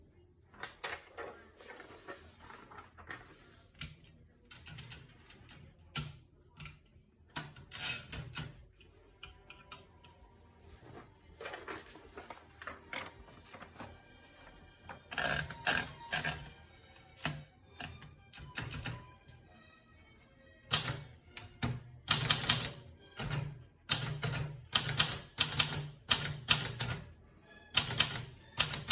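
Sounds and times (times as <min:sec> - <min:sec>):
manual typewriter keys clacking: 0:03.8 - 0:06.8, 0:17.2 - 0:19.0, 0:21.6 - 0:27.0, 0:27.8 - 0:28.9.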